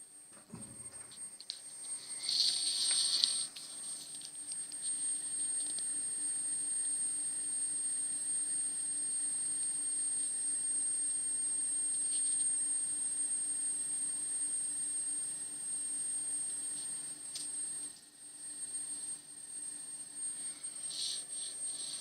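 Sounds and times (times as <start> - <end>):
thin high whine: 0.0 - 22.0.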